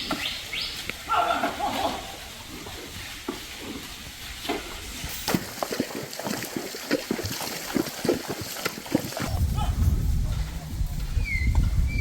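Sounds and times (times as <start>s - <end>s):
footsteps squelching in mud: 4.4s - 9.6s.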